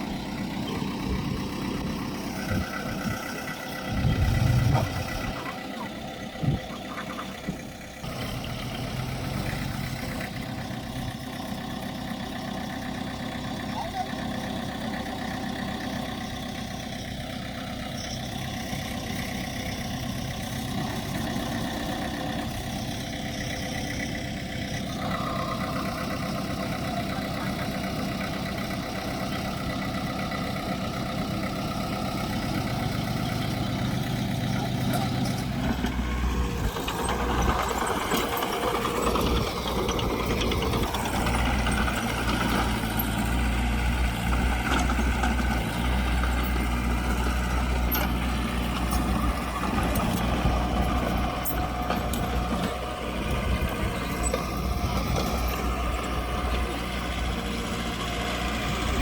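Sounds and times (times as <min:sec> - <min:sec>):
heavy machinery diesel engines: 0:00.0 - 0:59.0.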